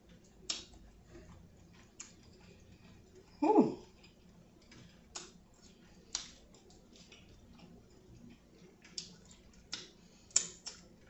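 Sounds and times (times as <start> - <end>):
wet mouth clicks and smacks: 0.4 - 0.8, 1.7 - 3.0, 4.0 - 7.7, 8.3 - 11.0.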